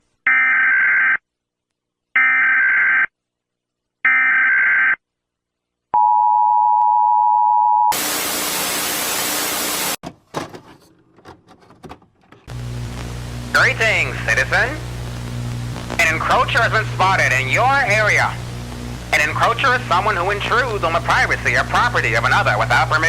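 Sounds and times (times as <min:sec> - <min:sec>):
loud static hiss: 0:08.0 - 0:10.0, 0:12.5 - 0:23.0
faint crackles: 0:12.5 - 0:23.0.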